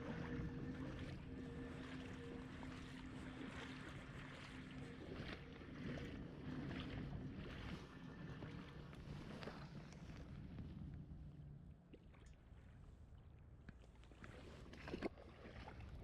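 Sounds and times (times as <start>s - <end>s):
faint river water flowing: 0.0s - 16.0s
low steady hum: 0.0s - 16.0s.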